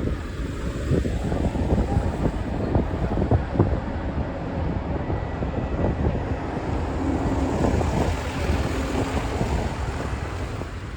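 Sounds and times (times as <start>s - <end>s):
wind buffeting microphone: 0.0s - 10.9s.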